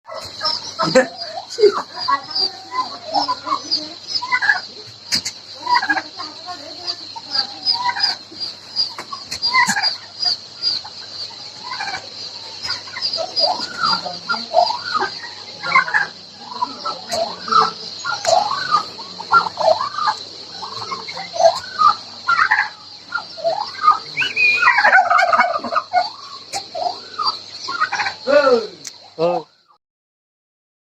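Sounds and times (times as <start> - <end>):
high-pitched chirping: 0.1 - 29.5
chickens clucking and squawking: 0.1 - 29.7.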